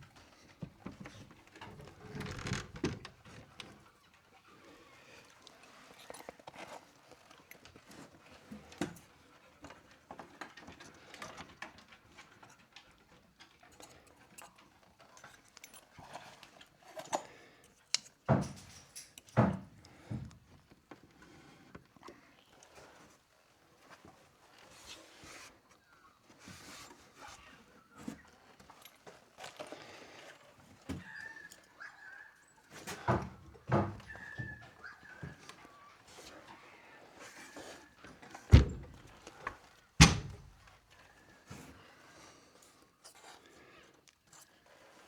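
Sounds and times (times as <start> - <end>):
heavy thumps: 38.5 - 39.1.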